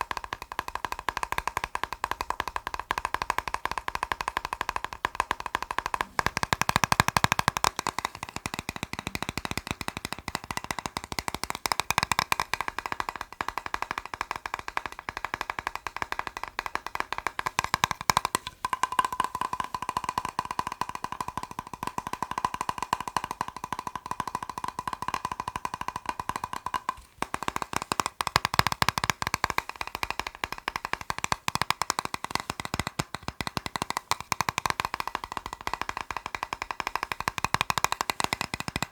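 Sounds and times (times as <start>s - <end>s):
fast tapping on plastic box: 0.0s - 38.9s.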